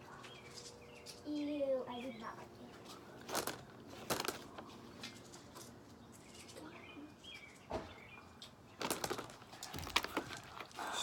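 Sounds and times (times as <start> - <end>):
rustling: 2.9 - 5.6, 8.8 - 10.9.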